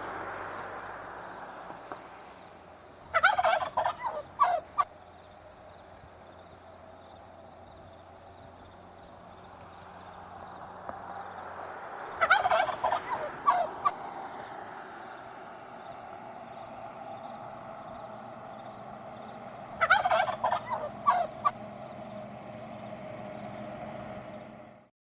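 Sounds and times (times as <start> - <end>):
turkey gobbling: 3.1 - 4.9, 12.2 - 14.0, 19.2 - 21.6.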